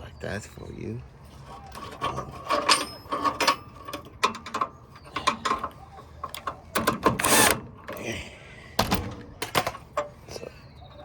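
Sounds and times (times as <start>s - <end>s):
hand tools clanking on metal: 1.6s - 5.7s.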